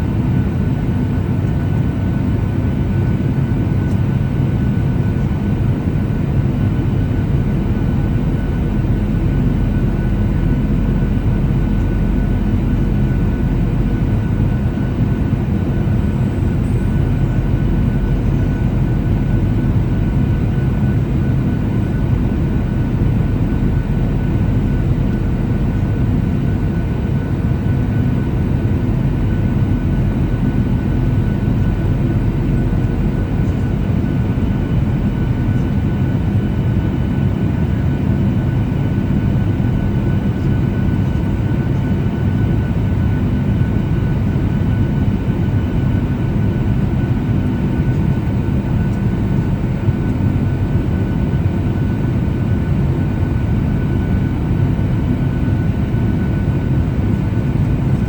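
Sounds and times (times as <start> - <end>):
faint steady whine: 0.0 - 58.0
low rumble of airflow and engines: 0.0 - 58.0.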